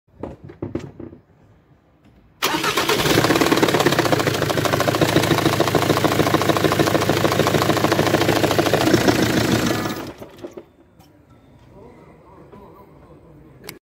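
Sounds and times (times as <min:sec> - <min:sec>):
diesel engine clattering: 0:02.4 - 0:10.7.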